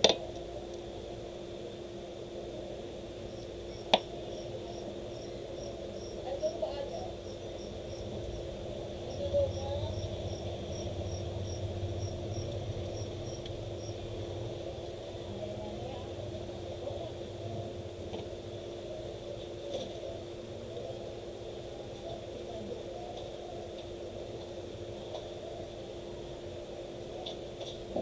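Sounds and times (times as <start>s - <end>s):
steady hum: 0.0s - 28.0s
insect chirping: 3.2s - 14.4s.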